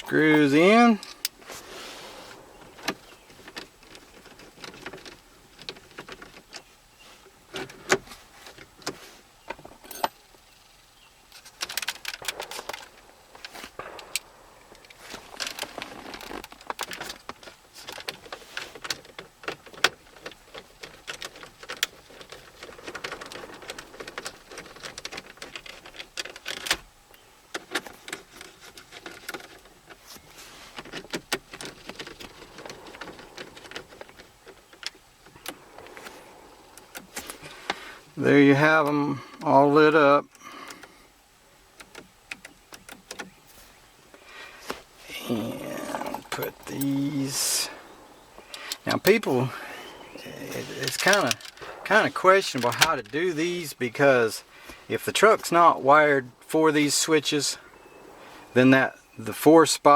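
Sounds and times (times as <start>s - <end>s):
plastic trim clicks and scraping: 50.4s - 53.3s.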